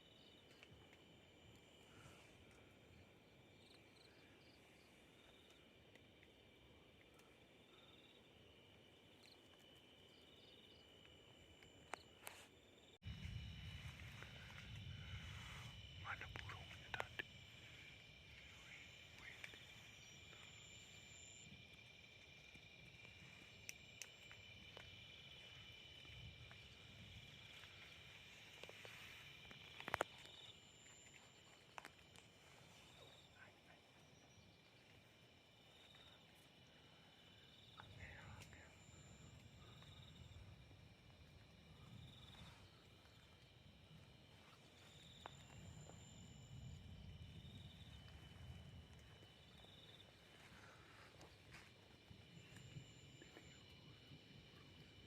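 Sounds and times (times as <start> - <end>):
crickets trilling: 0.0 - 55.0
low rumble: 13.0 - 23.6.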